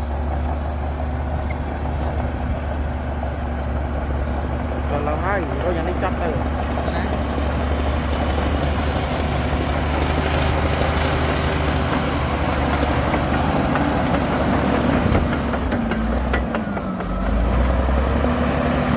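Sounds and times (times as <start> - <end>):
bulldozer diesel engine running: 0.0 - 18.9
sharp metallic knocks: 11.0 - 17.2.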